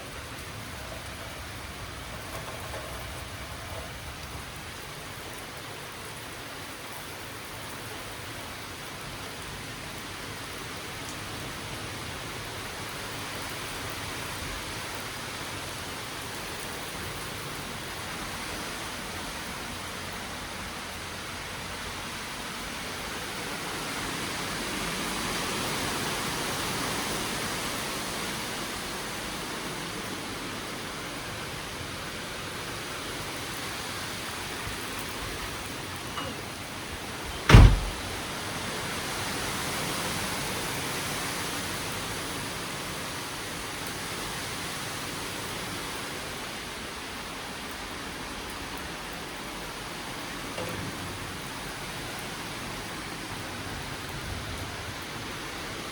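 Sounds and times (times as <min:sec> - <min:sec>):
rain: 0:00.0 - 0:55.9.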